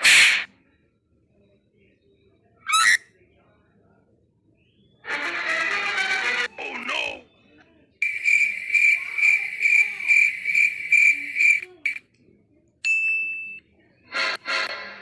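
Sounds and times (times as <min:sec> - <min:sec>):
harsh sound: 0:00.0 - 0:00.5
cricket chirping: 0:08.0 - 0:12.0.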